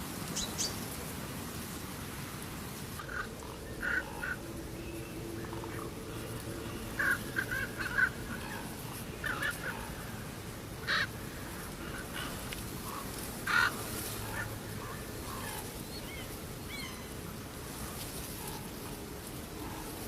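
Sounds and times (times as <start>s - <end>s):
harsh bird calls: 3.0s - 10.2s.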